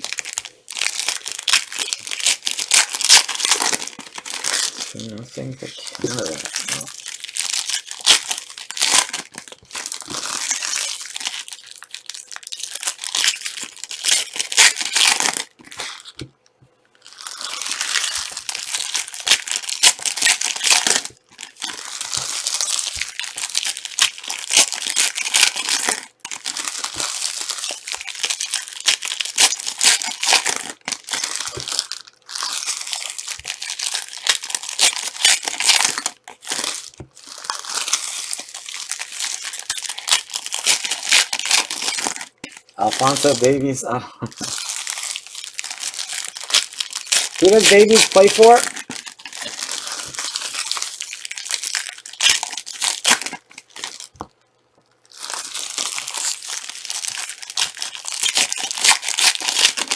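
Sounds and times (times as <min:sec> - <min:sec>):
wrappers crinkling and tearing: 0:00.0 - 0:16.3, 0:16.9 - 0:59.9.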